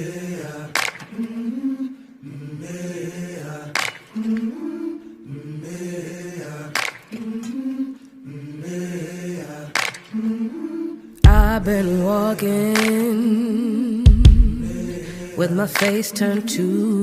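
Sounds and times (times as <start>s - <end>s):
wordless chanted vocals: 0.0s - 17.0s.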